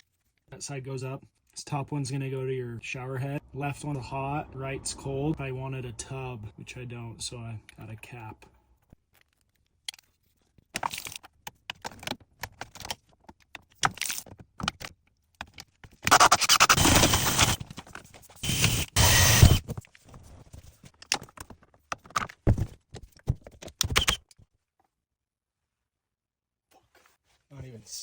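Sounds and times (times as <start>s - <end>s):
loud noisy stretches: 3.4s - 6.9s.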